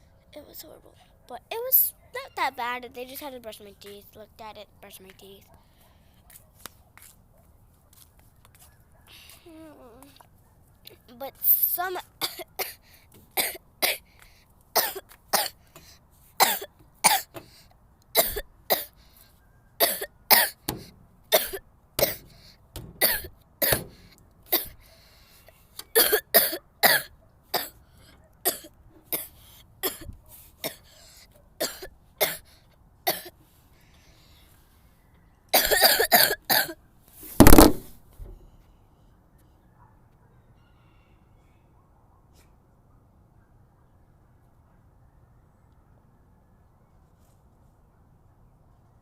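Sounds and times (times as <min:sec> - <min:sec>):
girl coughing: 0:12.2 - 0:12.8, 0:13.4 - 0:14.0, 0:14.8 - 0:15.6, 0:16.4 - 0:17.3, 0:18.2 - 0:19.0, 0:19.8 - 0:20.6, 0:21.3 - 0:22.3, 0:23.0 - 0:23.9, 0:24.5 - 0:24.8, 0:26.0 - 0:27.7, 0:28.4 - 0:30.9, 0:31.6 - 0:32.4, 0:33.1 - 0:33.4, 0:35.6 - 0:36.8.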